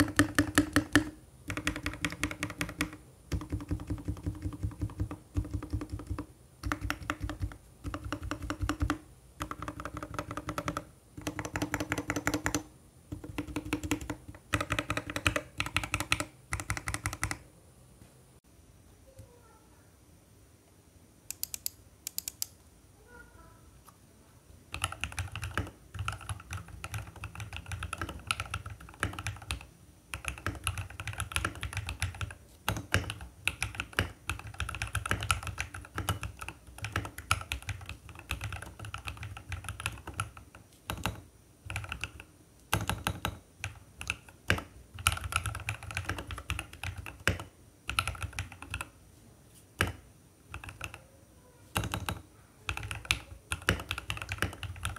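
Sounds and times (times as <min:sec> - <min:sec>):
typing on mechanical keyboard: 0:00.0 - 0:17.4, 0:24.7 - 0:48.9, 0:49.8 - 0:51.1, 0:51.7 - 0:54.9.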